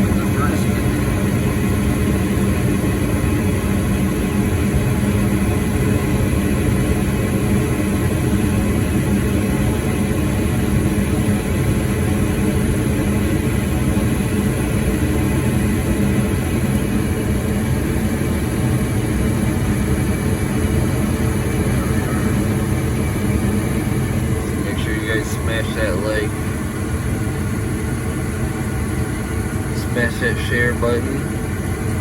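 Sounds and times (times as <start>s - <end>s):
gas furnace rumbling: 13.0s - 32.0s.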